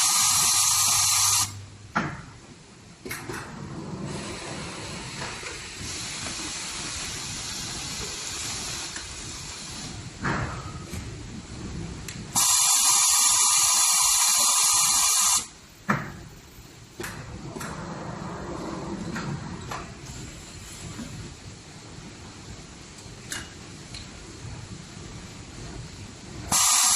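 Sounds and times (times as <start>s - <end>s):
welding machine hiss: 0.0s - 1.6s, 4.1s - 10.2s, 12.3s - 15.6s, 26.5s - 26.9s.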